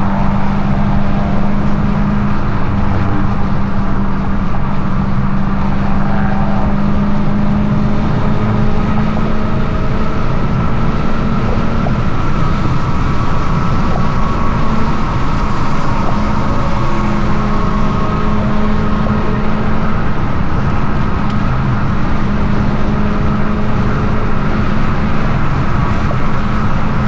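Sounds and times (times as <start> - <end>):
car engine exhaust drone: 0.0 - 27.0.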